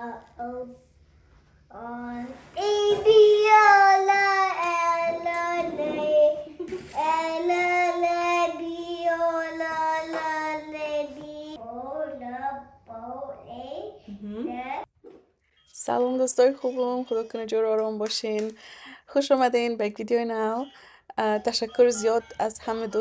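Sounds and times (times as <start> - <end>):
young child singing: 1.7 - 13.8.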